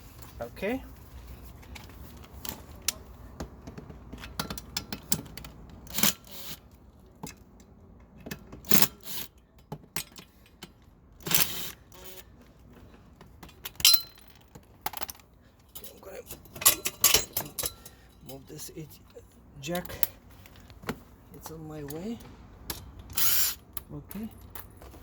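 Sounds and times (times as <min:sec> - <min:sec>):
ringing metal clink: 0:13.8 - 0:14.3
metallic tool clicks and clinks: 0:13.8 - 0:18.5.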